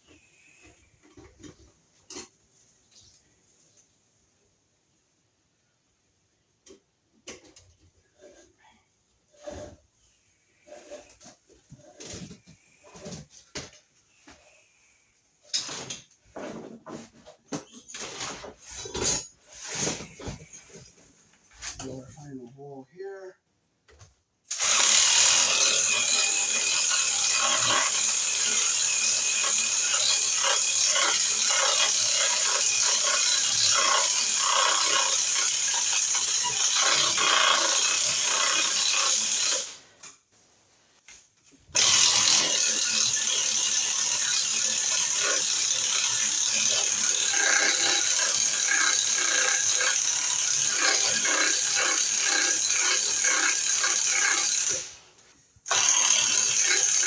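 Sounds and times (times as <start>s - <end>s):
power drill boring wood: 24.5s - 39.9s, 41.7s - 55.0s, 55.7s - 57.0s.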